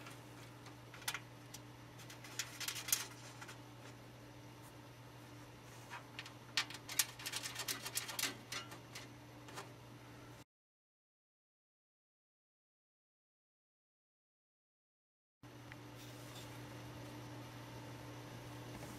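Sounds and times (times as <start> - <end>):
low electrical hum: 0.0 - 10.4, 15.4 - 18.9
computer parts clicking and tapping: 6.2 - 9.7.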